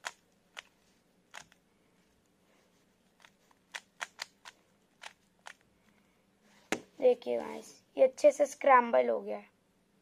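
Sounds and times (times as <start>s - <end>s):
plastic puzzle cube layers clicking: 0.0s - 1.6s, 3.1s - 5.7s.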